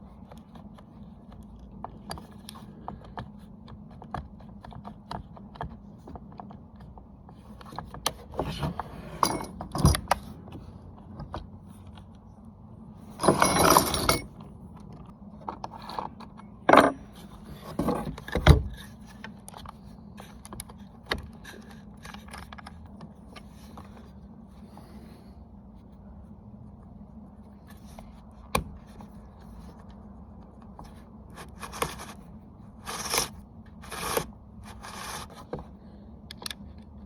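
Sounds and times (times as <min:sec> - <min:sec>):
small metal parts clinking: 0:09.2 - 0:10.2, 0:13.1 - 0:14.4, 0:15.7 - 0:17.2.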